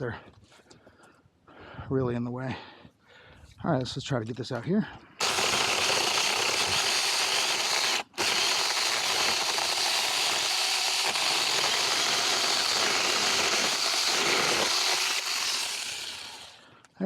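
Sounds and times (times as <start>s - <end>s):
mini chainsaw cutting wood: 5.2s - 16.6s.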